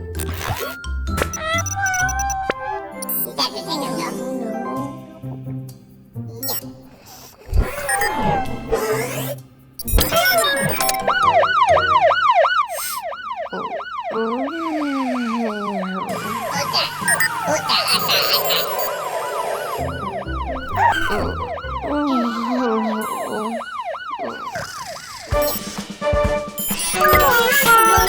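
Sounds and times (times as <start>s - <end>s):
cartoon background music: 0.0s - 12.4s, 13.5s - 23.6s, 24.2s - 28.0s
cartoon sound effects: 0.2s - 4.4s, 7.5s - 25.7s, 26.6s - 28.0s
fire truck siren yelping: 1.2s - 3.5s, 9.8s - 25.8s, 26.5s - 28.0s.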